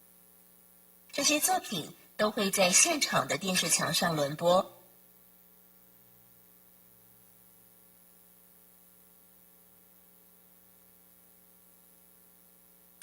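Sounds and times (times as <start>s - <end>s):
faint electrical hum: 0.0s - 13.0s.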